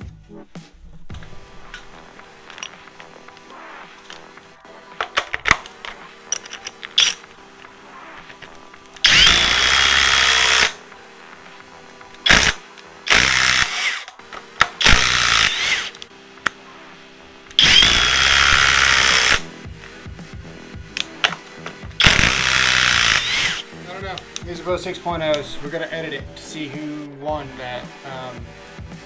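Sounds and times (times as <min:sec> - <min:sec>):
impact driver driving a screw: 0:07.0 - 0:07.2, 0:09.0 - 0:10.8, 0:12.2 - 0:16.0, 0:17.6 - 0:19.5, 0:22.0 - 0:23.6.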